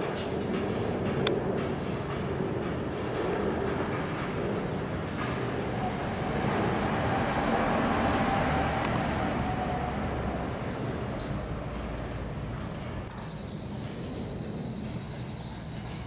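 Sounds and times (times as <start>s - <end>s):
aircraft rumbling overhead: 0.0s - 16.0s.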